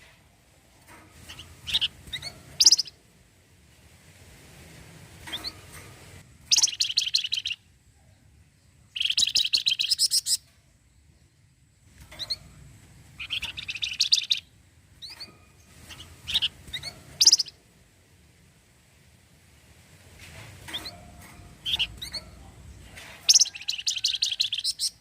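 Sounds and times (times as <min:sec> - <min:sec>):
songbird rattling trills: 0:01.2 - 0:03.0, 0:05.2 - 0:05.8, 0:06.4 - 0:07.7, 0:08.9 - 0:11.2, 0:11.8 - 0:17.6, 0:20.6 - 0:25.0
bird whistled rising notes: 0:01.7 - 0:02.9, 0:16.3 - 0:17.5.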